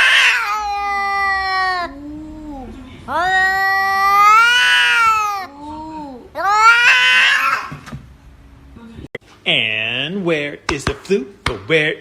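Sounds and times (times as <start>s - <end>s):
cat yowling: 0.0s - 7.8s.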